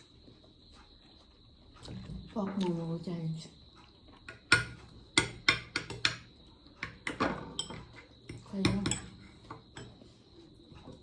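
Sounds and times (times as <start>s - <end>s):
forks clinking on plates: 7.1s - 8.0s.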